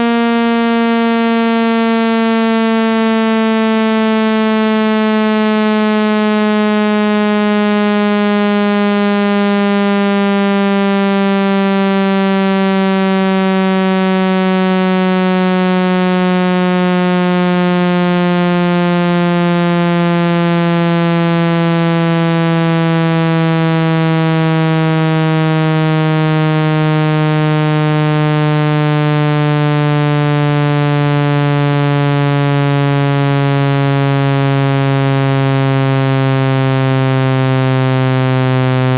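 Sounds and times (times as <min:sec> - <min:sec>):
buzzy tone sliding down: 0:36.4 - 0:38.9.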